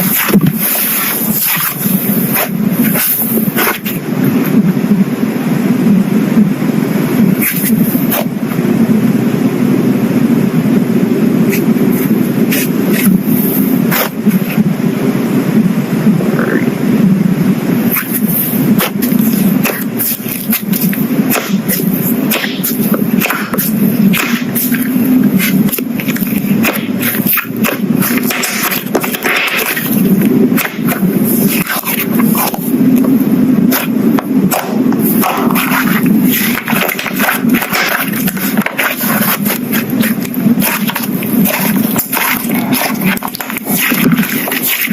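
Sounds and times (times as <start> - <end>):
slime squishing: 17.9 - 44.9.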